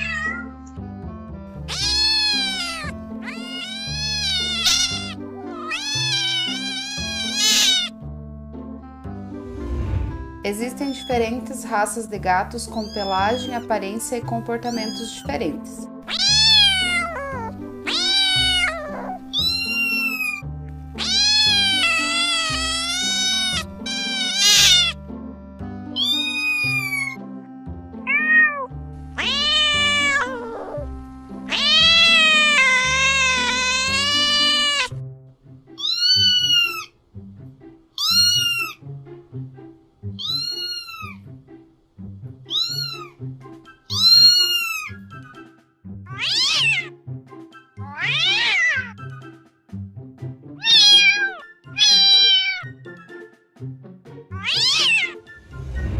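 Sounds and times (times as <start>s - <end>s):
cat meowing: 0.0s - 0.5s, 1.6s - 8.0s, 12.8s - 13.7s, 14.7s - 15.2s, 16.0s - 20.4s, 21.0s - 25.0s, 26.0s - 27.2s, 28.0s - 30.9s, 31.5s - 34.9s, 35.8s - 36.9s, 38.0s - 38.8s, 40.1s - 41.2s, 42.5s - 43.2s, 43.9s - 45.1s, 46.1s - 46.9s, 47.8s - 49.0s, 50.6s - 52.8s, 54.3s - 55.3s
background music: 0.0s - 55.9s.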